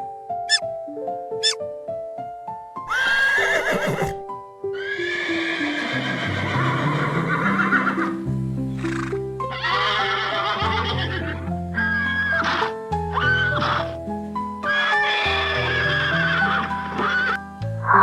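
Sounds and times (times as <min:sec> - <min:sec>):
background music: 0:00.0 - 0:18.0
horse whinnying: 0:02.9 - 0:04.2, 0:04.8 - 0:08.1, 0:08.8 - 0:14.0, 0:14.6 - 0:18.0.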